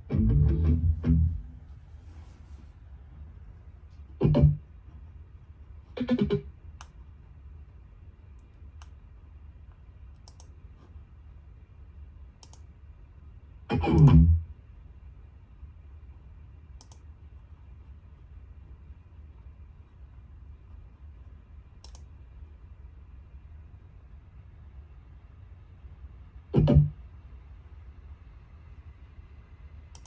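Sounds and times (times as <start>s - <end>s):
short guitar-like sounds: 0.0s - 1.6s, 4.2s - 4.6s
steady low hum: 0.0s - 30.0s
faint clicks: 6.8s - 7.0s, 9.7s - 10.6s, 12.4s - 12.7s, 16.8s - 17.1s, 21.8s - 22.1s.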